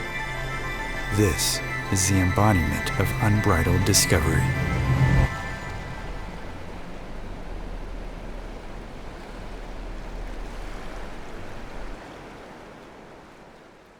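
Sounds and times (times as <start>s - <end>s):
low rumble: 0.0s - 9.0s
ocean surf washing: 0.0s - 12.0s.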